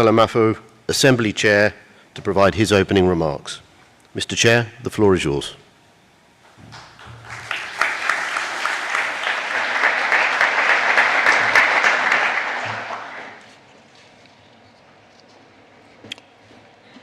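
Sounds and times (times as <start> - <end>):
audience applauding: 6.7 - 13.5.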